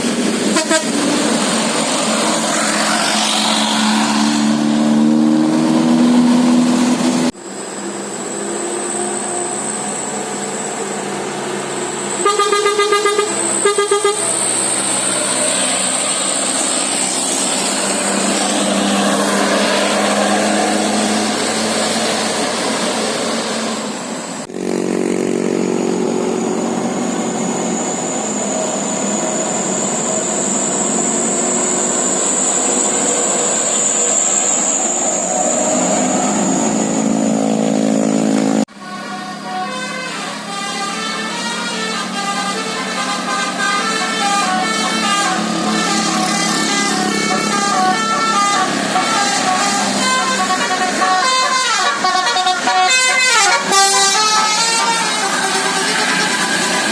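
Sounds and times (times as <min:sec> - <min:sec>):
traffic and engine noise: 0:00.0 - 0:56.9
musical bus air horn: 0:00.4 - 0:01.2, 0:12.0 - 0:16.0, 0:38.6 - 0:56.9.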